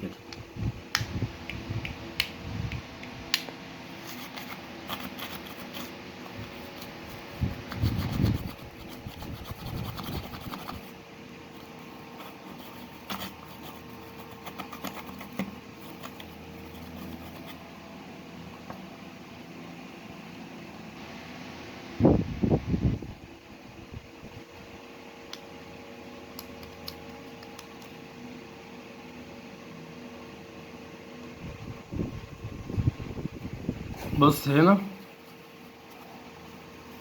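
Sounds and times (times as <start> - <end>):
steady hum: 0.0 - 37.0
toothbrush scrubbing circuit board: 6.5 - 10.9, 11.9 - 17.6.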